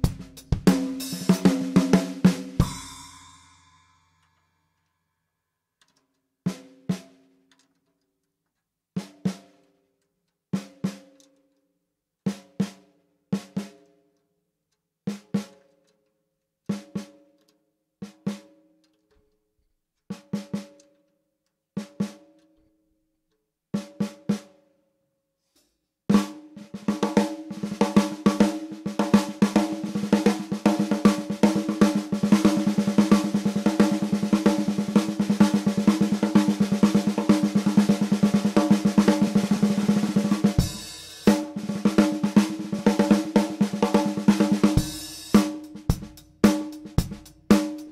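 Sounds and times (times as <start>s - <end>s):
snare drum roll: 0.0s - 3.4s, 26.1s - 47.9s
snare drum hits: 27.0s - 47.9s.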